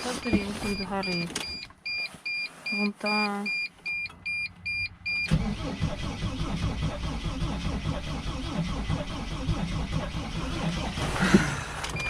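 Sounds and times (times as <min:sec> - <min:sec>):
dashboard warning beeps: 0:00.0 - 0:05.4
diesel engine cranking: 0:03.9 - 0:12.0.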